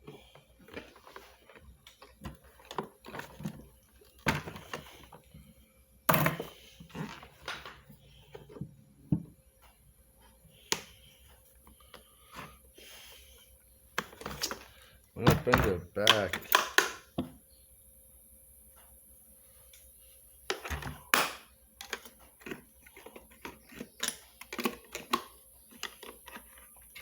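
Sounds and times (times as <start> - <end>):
plastic parts clicking and knocking: 14.0 - 17.4, 20.5 - 27.0.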